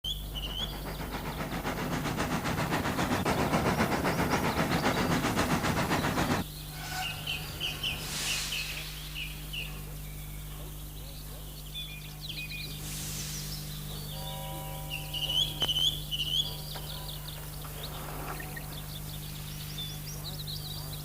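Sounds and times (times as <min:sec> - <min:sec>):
steam locomotive chuffing: 0:00.0 - 0:11.6
birds chirping: 0:00.0 - 0:21.0
steam hissing: 0:00.1 - 0:09.9, 0:12.7 - 0:14.3.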